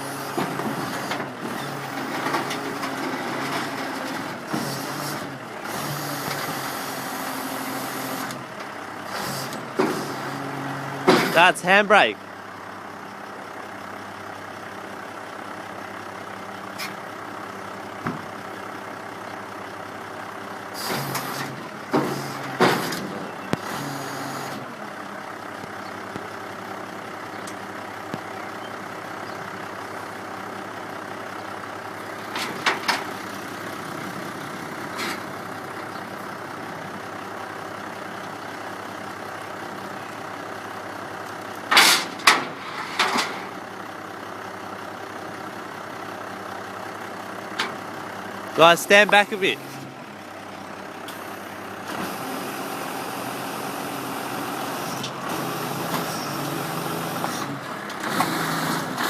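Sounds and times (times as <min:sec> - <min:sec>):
vehicle engine idling: 0:04.4 - 0:20.8, 0:21.6 - 0:58.1.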